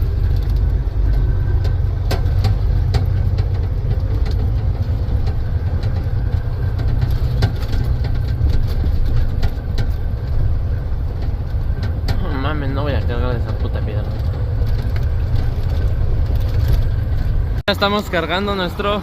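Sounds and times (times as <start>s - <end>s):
sharp knocks and clacks: 0.0s - 17.6s
diesel engine idling: 0.0s - 19.0s.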